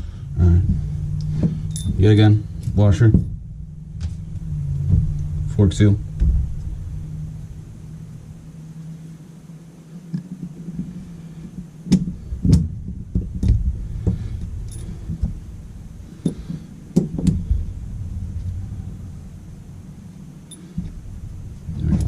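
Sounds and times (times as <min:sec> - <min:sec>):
low steady rumble: 0:00.0 - 0:22.0
metal parts knocking and clinking: 0:01.6 - 0:02.2, 0:14.4 - 0:15.3.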